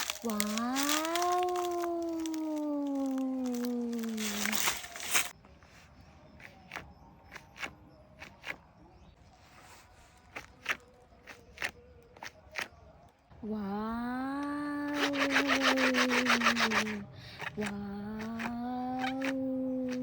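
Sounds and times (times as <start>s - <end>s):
loud crunching rustle: 0.0s - 5.4s, 14.9s - 20.0s
voice saying wow: 0.1s - 5.0s.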